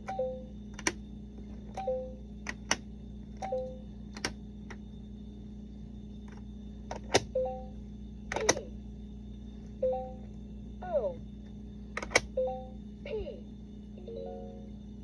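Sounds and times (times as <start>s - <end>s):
plastic magnets clicking: 0.8s - 1.0s, 8.3s - 8.6s, 12.0s - 12.2s.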